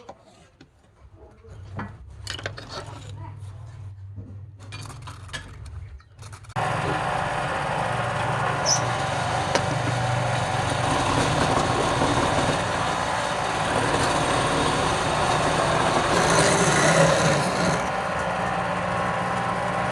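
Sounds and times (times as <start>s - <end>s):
wood lathe humming: 6.6s - 19.9s.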